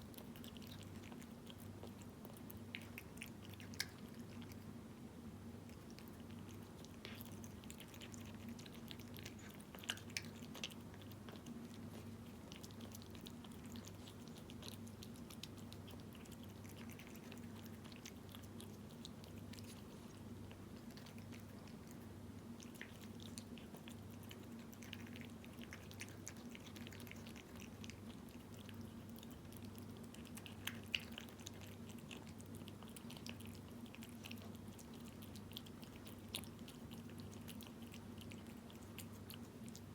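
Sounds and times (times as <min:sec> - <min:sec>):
cat chewing and lapping food: 0:00.0 - 0:39.9.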